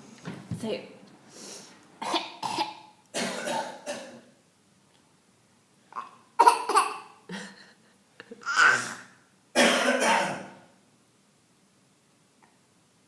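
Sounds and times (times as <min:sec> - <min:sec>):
small boy coughing: 0:02.0 - 0:04.2, 0:06.0 - 0:07.2, 0:08.4 - 0:10.5.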